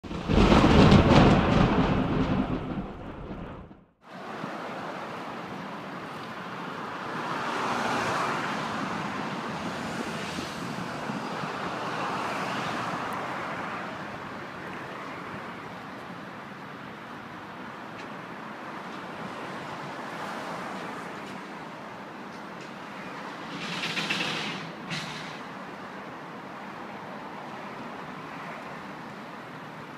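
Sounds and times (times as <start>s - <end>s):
loud low rumble: 0.0s - 3.9s
street traffic: 0.0s - 29.9s.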